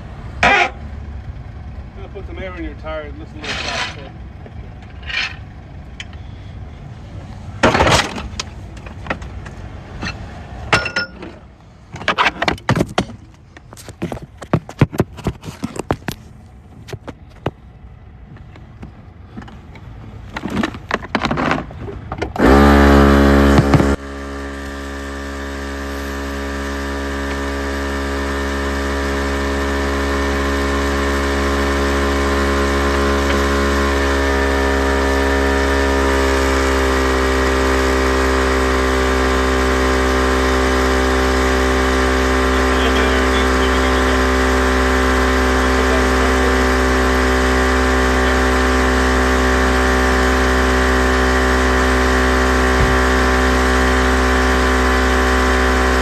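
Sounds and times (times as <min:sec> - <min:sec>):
air compressor motor running: 0:21.4 - 0:56.0.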